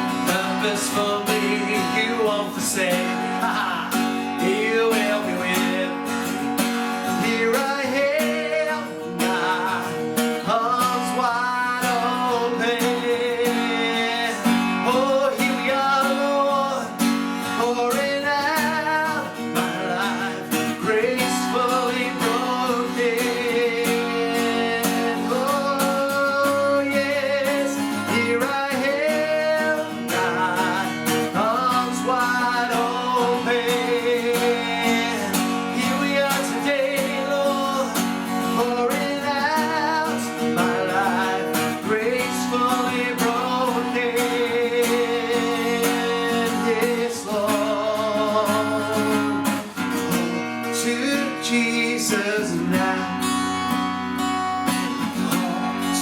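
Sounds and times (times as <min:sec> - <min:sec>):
person singing: 0:00.0 - 0:53.7, 0:54.8 - 0:56.0
strummed acoustic guitar: 0:00.0 - 0:56.0.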